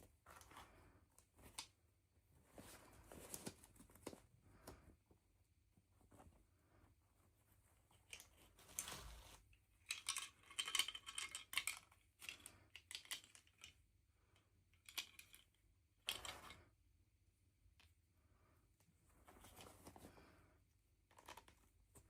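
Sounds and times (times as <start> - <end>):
plastic pieces clicking: 9.8 - 13.8.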